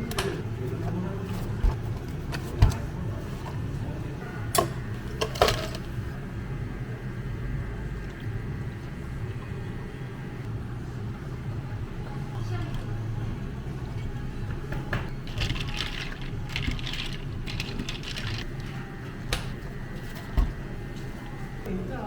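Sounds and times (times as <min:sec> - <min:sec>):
steady low machine hum: 0:00.0 - 0:22.0
cups and utensils clinking: 0:14.8 - 0:18.8.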